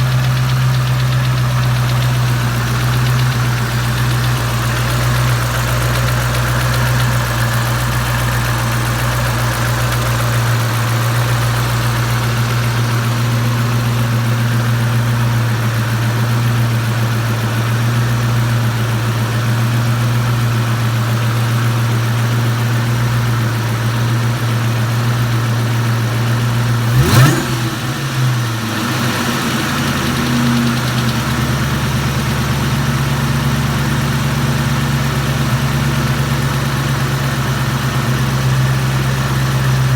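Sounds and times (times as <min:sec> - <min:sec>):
car engine idling with tick: 0:00.0 - 0:39.9
engine revving: 0:26.7 - 0:32.6.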